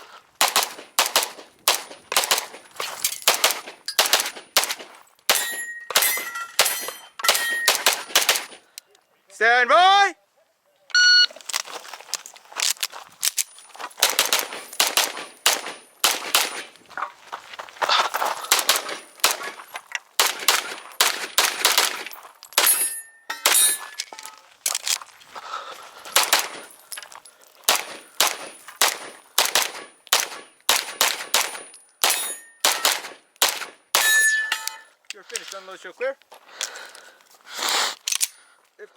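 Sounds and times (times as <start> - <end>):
pistol rapid gunshots: 0.4 - 2.5, 3.3 - 5.4, 6.0 - 8.6, 14.0 - 16.6, 18.5 - 19.5, 20.2 - 22.0, 26.2 - 26.6, 27.7 - 34.1.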